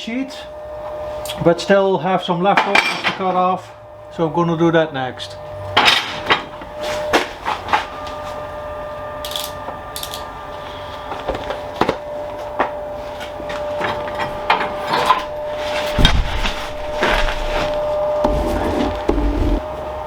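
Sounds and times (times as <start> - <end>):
steady hum: 12.0 - 20.0
metal scraping: 13.9 - 19.7.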